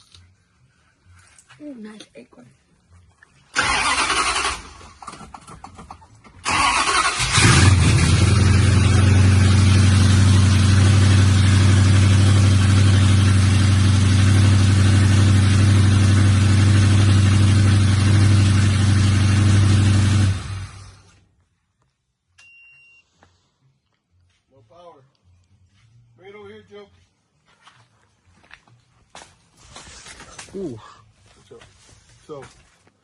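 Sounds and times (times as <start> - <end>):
starter cranking engine: 3.6 - 9.0
car engine idling: 6.4 - 21.2.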